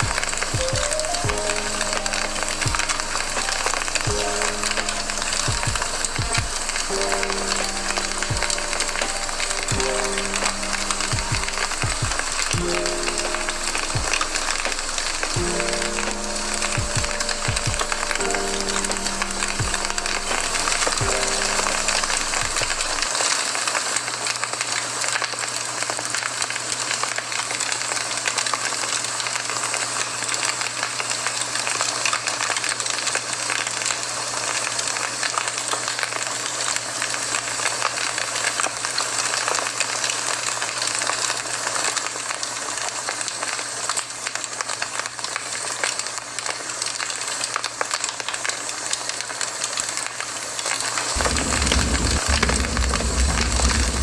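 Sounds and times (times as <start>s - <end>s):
campfire crackling and hissing: 50.4s - 54.0s
faint low hum: 51.2s - 54.0s.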